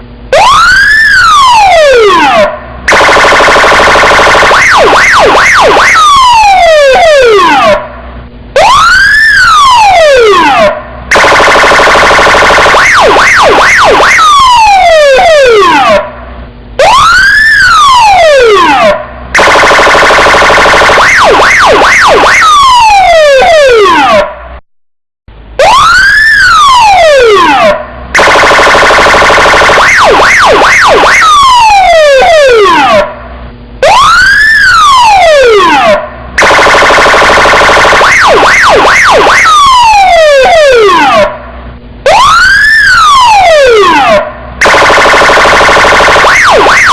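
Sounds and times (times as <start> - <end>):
police siren wailing: 0.2 - 24.6, 25.5 - 46.9.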